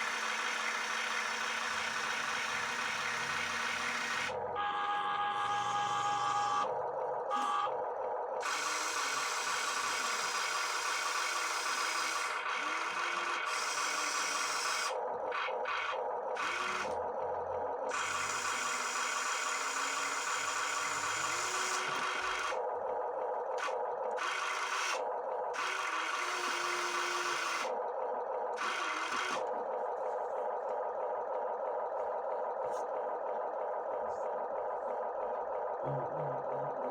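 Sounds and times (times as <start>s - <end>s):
toy excavator motors whirring: 0.0s - 6.7s, 7.3s - 7.8s, 8.4s - 17.0s, 17.8s - 22.6s, 23.5s - 29.9s.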